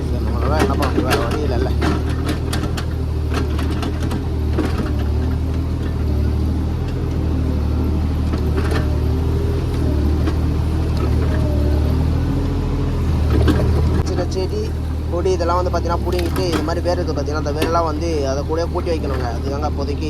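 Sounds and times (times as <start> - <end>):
excavator diesel engine running: 0.0 - 20.0.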